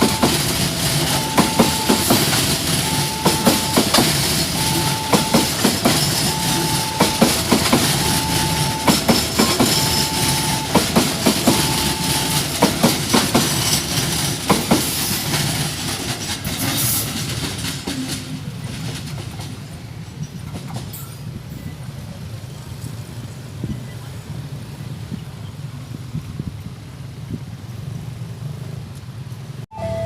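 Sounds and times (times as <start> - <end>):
beeping tone: 0.0 - 12.6, 29.7 - 30.0
train wheels clicking over rail joints: 0.0 - 21.7.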